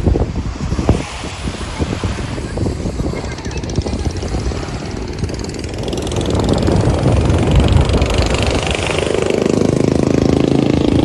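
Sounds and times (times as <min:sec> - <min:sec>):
rumbling wind or surf: 0:00.0 - 0:11.0
motor engine running: 0:03.2 - 0:11.0.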